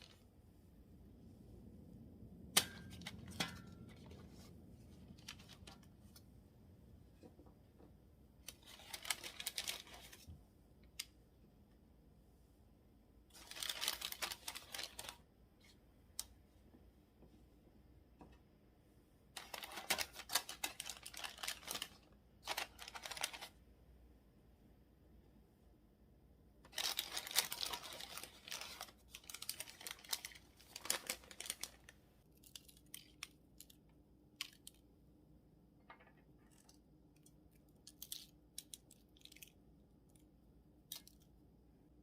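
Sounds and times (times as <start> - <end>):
rustling and tearing: 8.4 - 10.3, 13.3 - 15.8, 19.4 - 23.6, 26.7 - 33.8.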